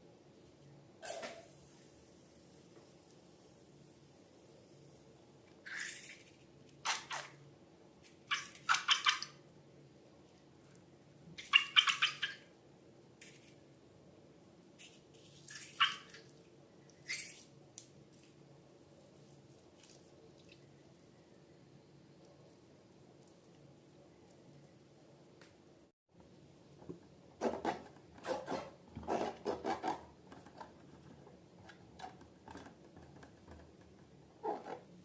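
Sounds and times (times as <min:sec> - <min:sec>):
slime squelching and dripping: 0:19.4 - 0:21.3.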